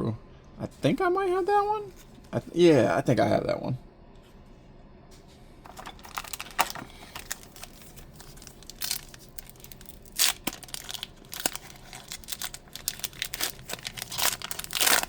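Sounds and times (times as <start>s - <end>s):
foil wrapper crinkling and tearing: 5.7s - 15.0s.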